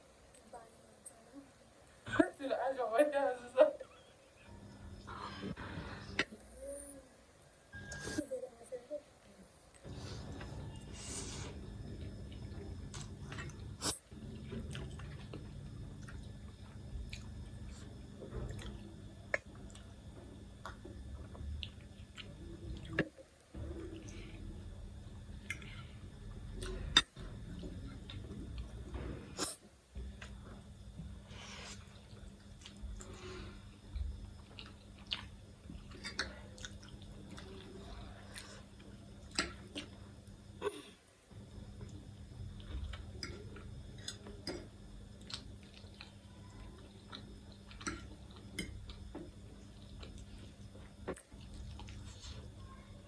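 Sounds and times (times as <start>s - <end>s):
steady low hum: 0.0s - 53.0s
person breathing: 5.0s - 6.2s, 9.8s - 11.6s
person chewing noodles: 9.8s - 18.8s, 33.9s - 37.7s, 42.6s - 52.4s.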